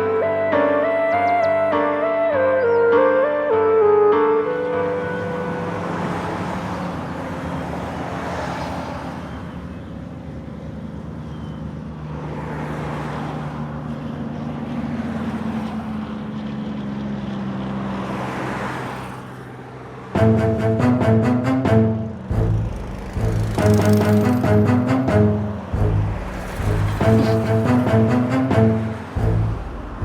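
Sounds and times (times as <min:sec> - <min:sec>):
vehicles passing: 0:00.0 - 0:30.0.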